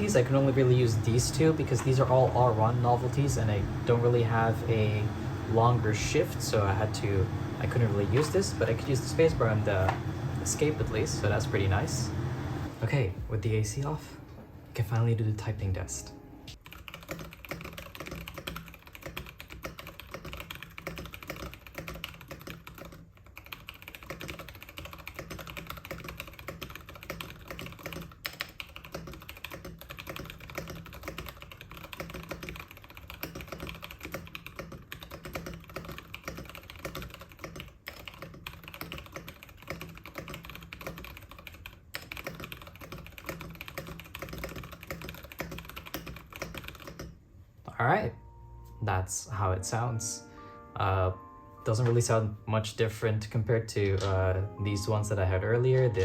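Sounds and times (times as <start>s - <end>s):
mechanical keyboard typing: 0.0s - 12.2s, 16.5s - 47.2s.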